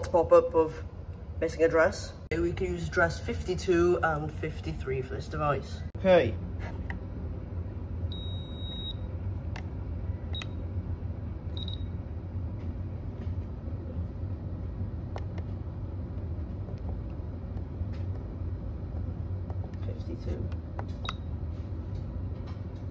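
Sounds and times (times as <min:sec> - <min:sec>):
steady low hum: 0:00.0 - 0:22.9
fire alarm panel beeping: 0:08.1 - 0:09.1, 0:11.5 - 0:12.0.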